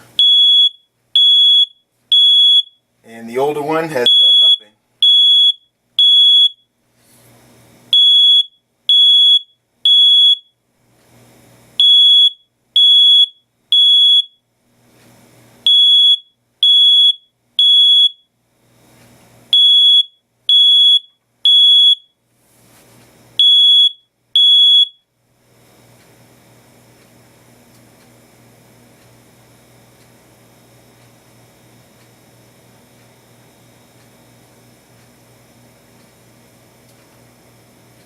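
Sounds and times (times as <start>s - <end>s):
smoke alarm beeping: 0.2s - 2.9s, 4.0s - 6.7s, 7.9s - 10.6s, 11.8s - 14.5s, 15.6s - 18.4s, 19.5s - 22.2s, 23.4s - 25.1s.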